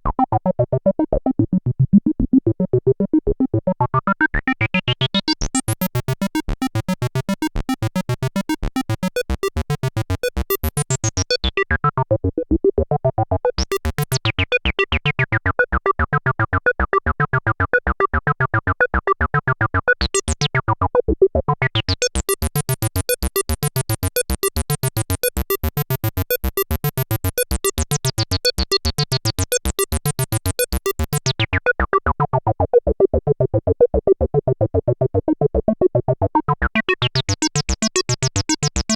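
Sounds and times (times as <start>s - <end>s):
squelchy synthesizer bassline: 36.1s - 38.9s.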